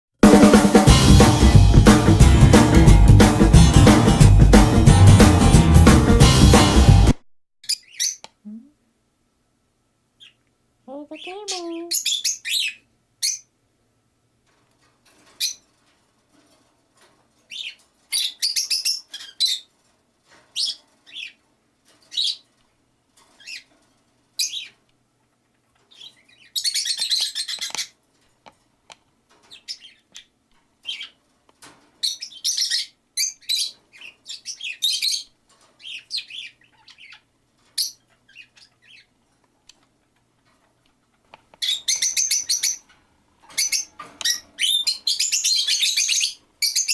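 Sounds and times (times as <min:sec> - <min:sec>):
parrots chirping: 0:07.6 - 0:08.4, 0:10.2 - 0:10.4, 0:11.0 - 0:13.6, 0:15.2 - 0:15.8, 0:17.5 - 0:19.8, 0:20.5 - 0:21.4, 0:22.0 - 0:22.5, 0:23.3 - 0:24.8, 0:25.8 - 0:28.0, 0:29.4 - 0:31.2, 0:32.0 - 0:39.2, 0:41.5 - 0:46.9.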